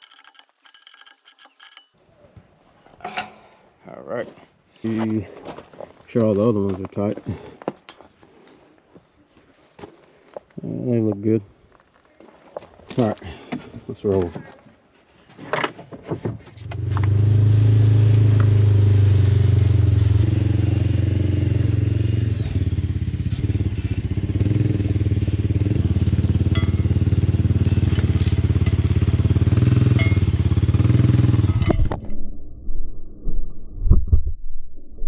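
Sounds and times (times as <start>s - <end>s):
small vehicle engine humming: 0.0s - 1.9s.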